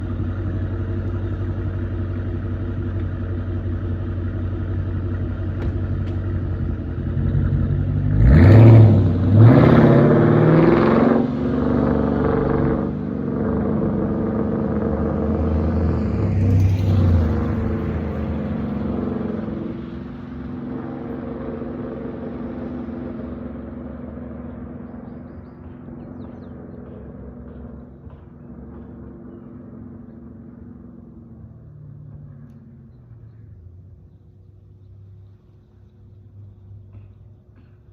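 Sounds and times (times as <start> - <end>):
car exhaust rumbling: 0.0 - 37.9
engine revving with crackles: 5.6 - 33.4.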